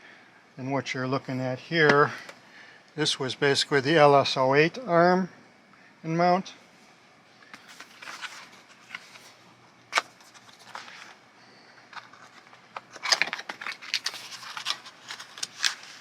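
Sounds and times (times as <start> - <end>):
plastic bag crinkling: 11.9 - 16.0.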